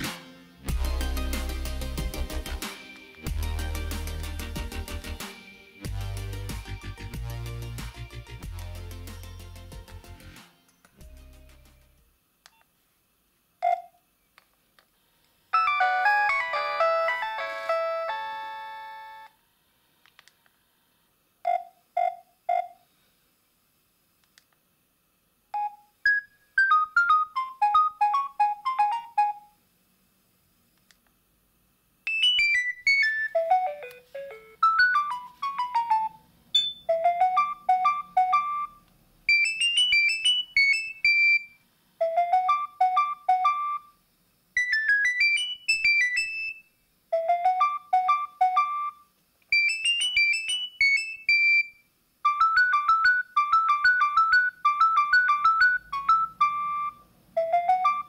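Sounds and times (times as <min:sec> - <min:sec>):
phone ringtone melody: 0:15.6 - 0:19.3, 0:25.6 - 0:29.5, 0:32.1 - 0:43.9, 0:44.6 - 0:46.6, 0:47.2 - 0:51.7, 0:52.3 - 0:58.0.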